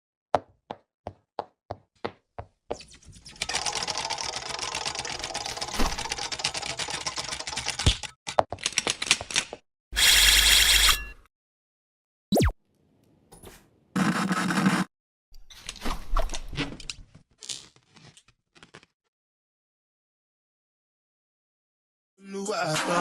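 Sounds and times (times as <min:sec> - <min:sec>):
typewriter clacking: 0:03.5 - 0:09.5.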